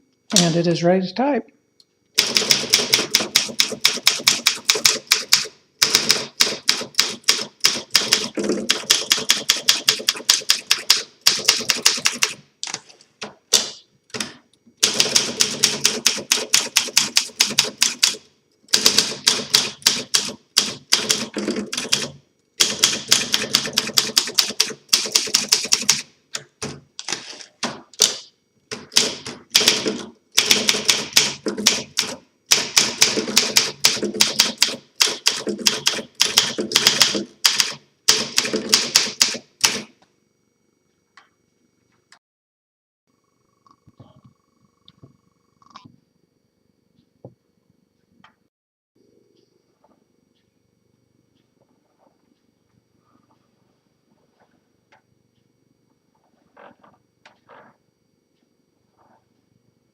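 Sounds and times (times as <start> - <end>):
typewriter keystrokes clattering: 2.2 - 12.8, 13.5 - 26.1, 27.0 - 39.8.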